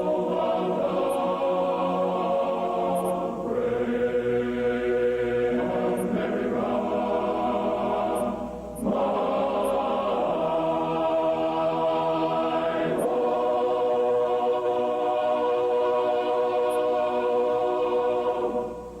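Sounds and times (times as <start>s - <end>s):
slow sustained chords music: 0.0s - 19.0s.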